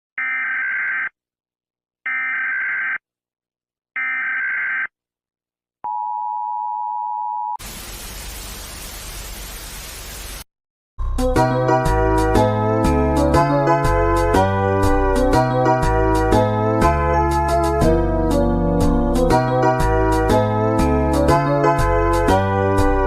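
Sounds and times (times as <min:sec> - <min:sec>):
steady alarm beep: 0:02.1 - 0:03.0
static hiss: 0:07.6 - 0:10.4.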